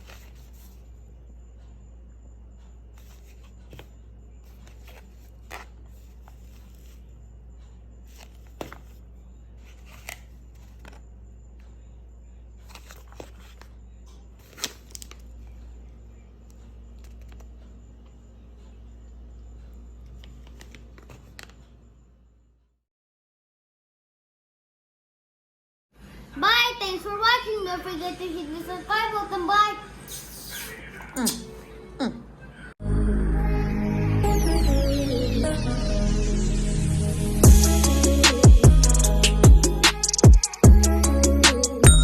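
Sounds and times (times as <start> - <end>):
steady low hum: 0.0 - 22.6.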